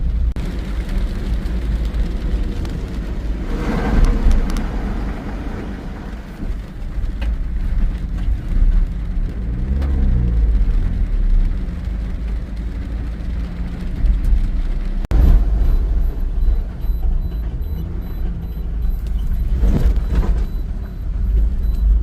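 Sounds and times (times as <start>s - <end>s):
heavy rain: 0.0s - 22.0s
traffic rumble on wet road: 0.0s - 22.0s
vehicle swishing past: 3.3s - 6.5s.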